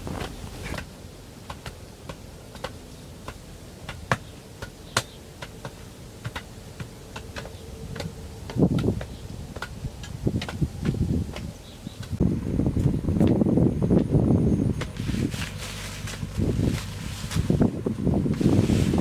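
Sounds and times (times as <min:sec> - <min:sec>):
sharp clicks and light knocks: 0:01.5 - 0:12.2
low rumbling noise: 0:05.9 - 0:19.0.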